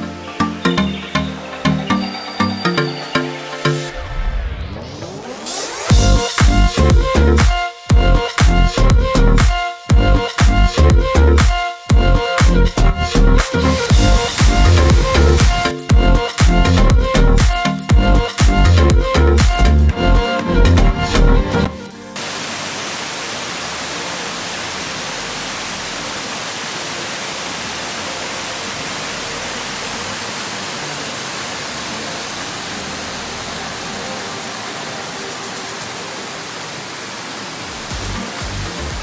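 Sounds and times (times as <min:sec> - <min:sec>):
waterfall rushing: 0:00.0 - 0:04.1, 0:22.2 - 0:39.0
background music: 0:00.0 - 0:36.5, 0:37.9 - 0:39.0.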